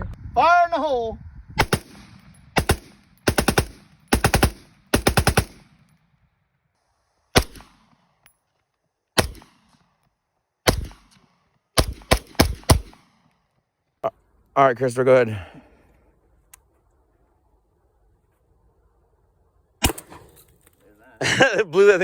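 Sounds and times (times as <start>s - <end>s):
gunshots echoing: 1.6s - 5.9s, 7.3s - 8.2s, 9.2s - 10.0s, 10.6s - 13.3s, 19.8s - 20.4s.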